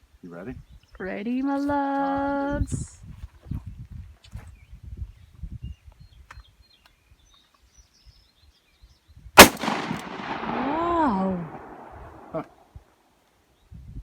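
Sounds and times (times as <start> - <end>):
gunshot with long echo: 9.4 - 12.6.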